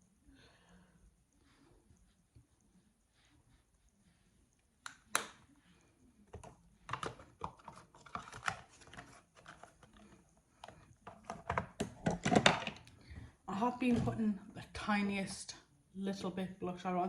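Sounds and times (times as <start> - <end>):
makeup compacts clicking and tapping: 6.3 - 9.0.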